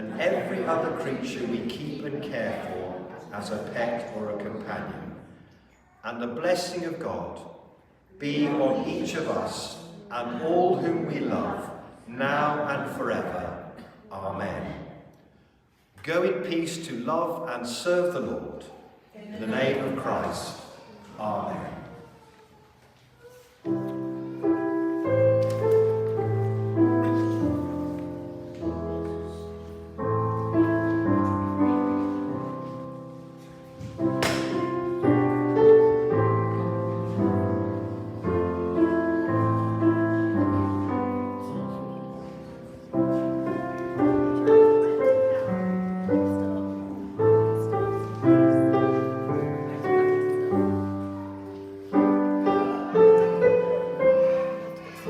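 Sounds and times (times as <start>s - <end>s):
piano playing slow chords: 23.6s - 55.0s.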